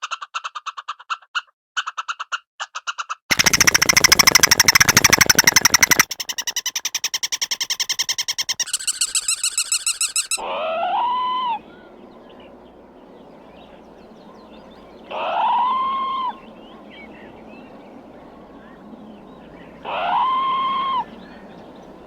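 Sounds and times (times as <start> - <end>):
squirrel chattering clicks: 0.0 - 10.4
squirrel drawn-out calls: 3.0 - 22.0.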